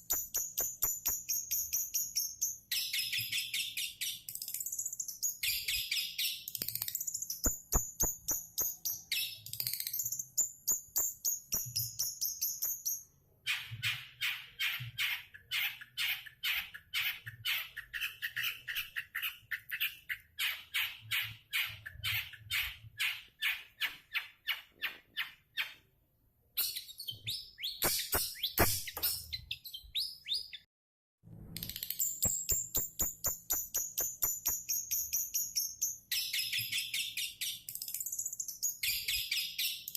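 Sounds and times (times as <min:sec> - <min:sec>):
high whistles: 0:00.0 - 0:02.6, 0:26.6 - 0:29.3.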